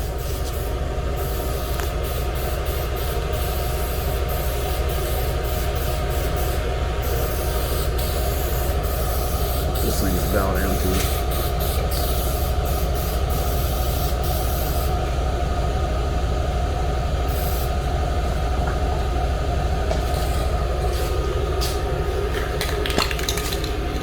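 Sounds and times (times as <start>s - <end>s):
low mechanical drone: 0.0s - 24.0s
spray paint can hissing: 0.1s - 14.9s, 22.4s - 24.0s.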